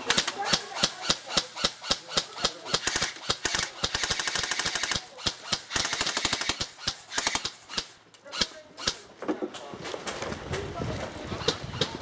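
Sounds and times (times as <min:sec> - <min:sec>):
airsoft full-auto bursts: 0:00.0 - 0:09.0.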